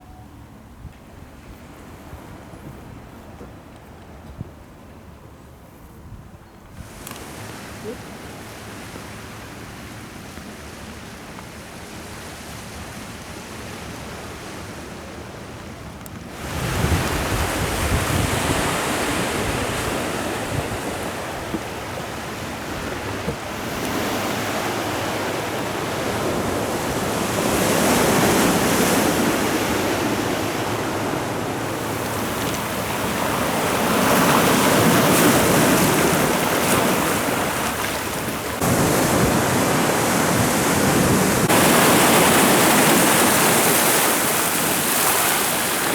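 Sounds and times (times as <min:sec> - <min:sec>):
sea surf washing onto shore: 0:06.8 - 0:45.9
wind buffeting microphone: 0:16.3 - 0:45.9.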